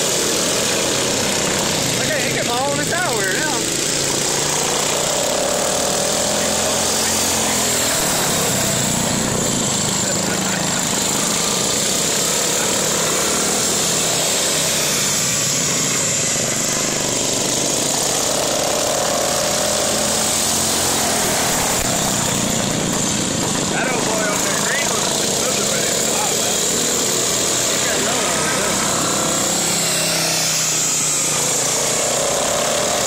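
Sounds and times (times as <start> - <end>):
lawn mower engines running: 0.0 - 33.0.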